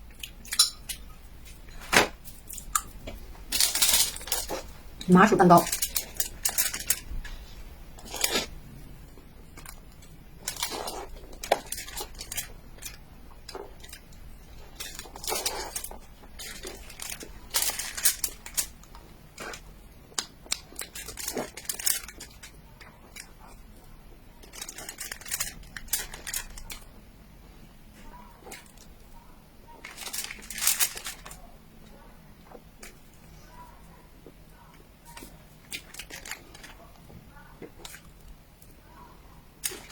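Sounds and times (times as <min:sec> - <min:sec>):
plastic packaging crinkling: 0:03.5 - 0:08.5, 0:09.5 - 0:19.6, 0:20.2 - 0:23.3, 0:24.4 - 0:26.9, 0:29.8 - 0:31.5, 0:35.1 - 0:37.0.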